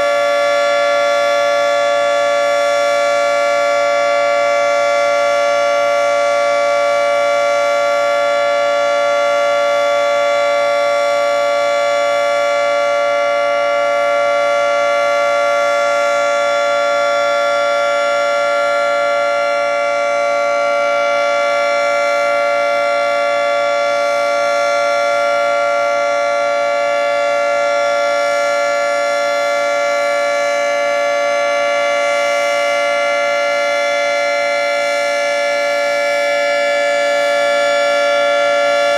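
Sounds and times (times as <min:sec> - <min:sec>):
outdoor warning siren: 0:00.0 - 0:38.9.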